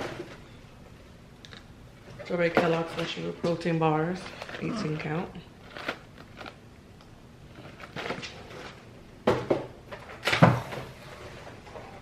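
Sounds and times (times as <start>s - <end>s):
packages knocking and clattering: 7.6s - 11.0s.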